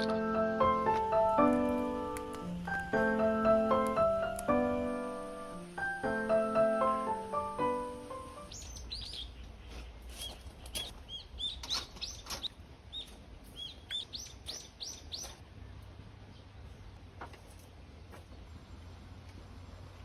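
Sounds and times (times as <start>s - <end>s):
piano tune: 0.0s - 8.6s
bird chirping: 0.0s - 15.4s.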